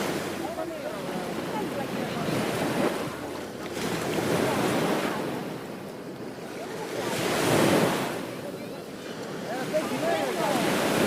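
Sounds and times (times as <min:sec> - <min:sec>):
ocean waves breaking on beach: 0:00.0 - 0:11.0.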